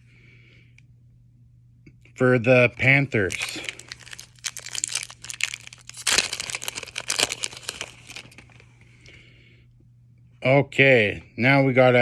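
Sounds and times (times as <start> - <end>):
faint low hum: 0.0 - 12.0
plastic wrapper crinkling: 3.1 - 8.6.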